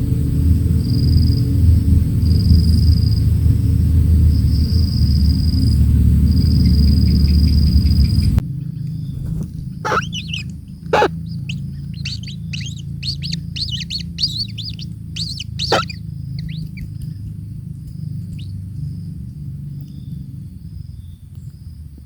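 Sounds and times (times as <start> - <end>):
bird chirping: 9.1 - 17.2
faint high whine: 9.9 - 11.1.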